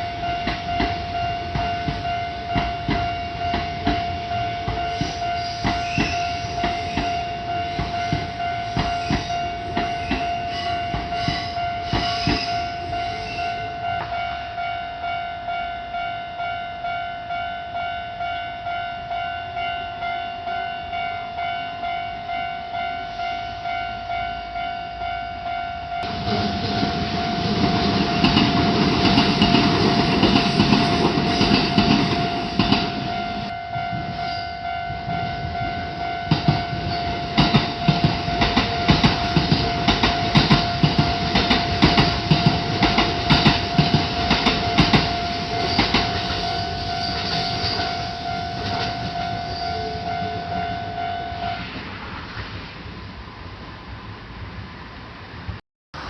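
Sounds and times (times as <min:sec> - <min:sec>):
level-crossing bell dinging: 0:00.0 - 0:51.6
train passing with rail noise: 0:00.0 - 0:56.0
wheels clacking over rail joints: 0:26.0 - 0:33.5, 0:36.3 - 0:48.0.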